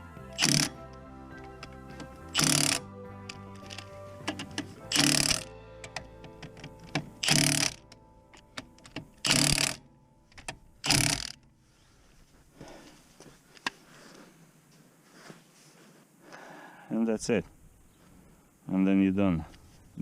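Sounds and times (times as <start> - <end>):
background music with held tones: 0.0 - 11.6.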